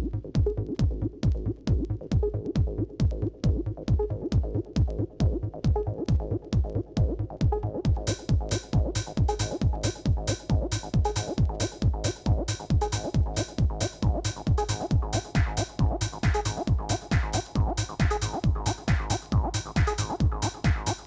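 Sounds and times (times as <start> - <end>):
electronic dance music: 8.0 - 21.0
hissing hi-hat pattern: 8.0 - 21.0.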